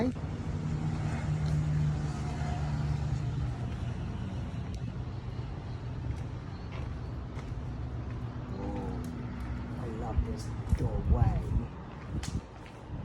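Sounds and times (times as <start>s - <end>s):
road traffic rumble: 0.0s - 13.0s
vehicle engine humming: 0.0s - 13.0s.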